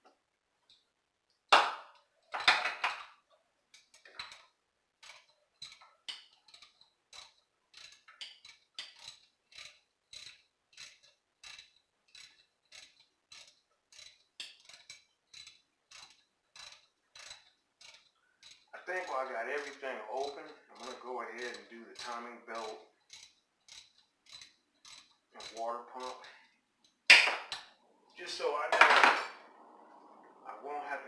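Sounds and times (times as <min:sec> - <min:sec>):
socket ratchet clicking: 0:03.8 - 0:27.8.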